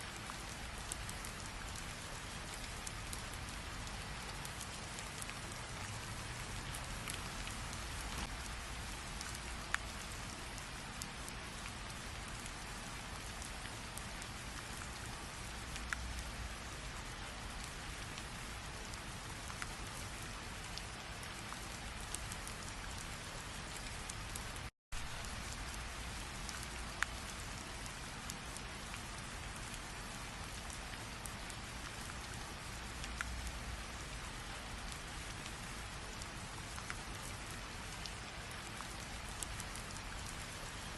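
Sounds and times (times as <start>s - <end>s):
steady rain hiss: 0.0s - 40.9s
raindrops ticking: 0.1s - 40.9s.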